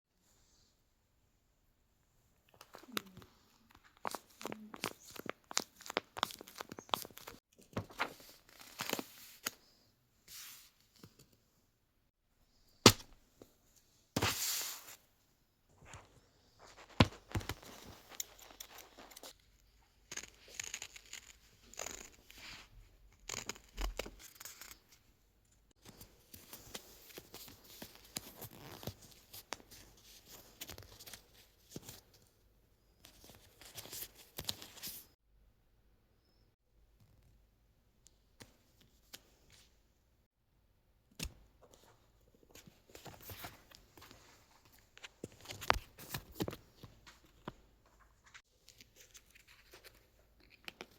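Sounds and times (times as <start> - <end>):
paper and tape rustling: 16.6 - 19.4.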